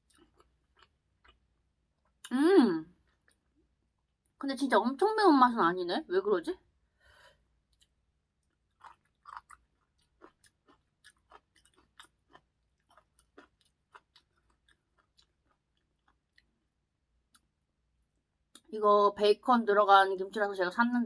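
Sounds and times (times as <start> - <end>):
wet chewing mouth clicks: 8.7 - 16.5.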